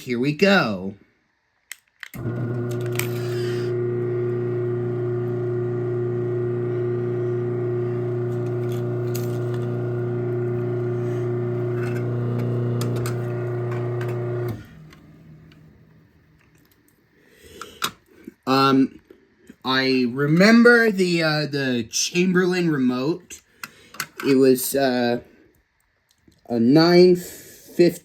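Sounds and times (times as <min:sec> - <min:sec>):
garage door opener motor hum: 0:02.2 - 0:16.4.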